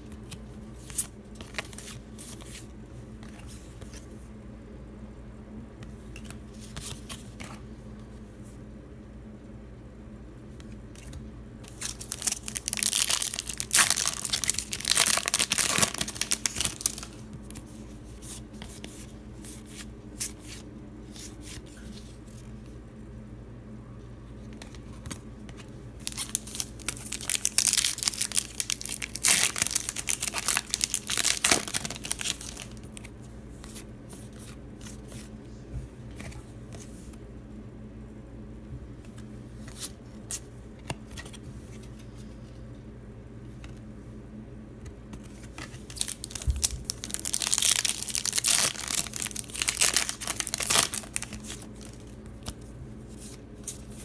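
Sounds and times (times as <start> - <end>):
card pack wrappers tearing and crinkling: 11.7 - 17.6, 26.0 - 33.1, 45.8 - 52.6.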